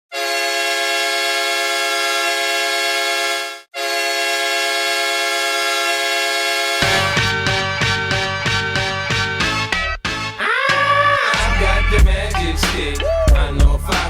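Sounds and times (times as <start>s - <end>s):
hockey goal horn blasts: 0.1s - 8.6s.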